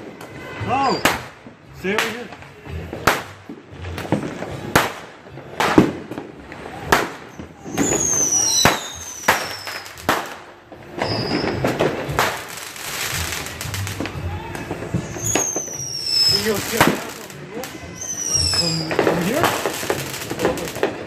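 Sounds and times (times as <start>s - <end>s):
fireworks bangs: 0.0s - 21.0s
descending firework whistles: 0.7s - 1.4s, 6.6s - 10.2s, 11.0s - 20.7s
crackling hiss: 15.1s - 21.0s.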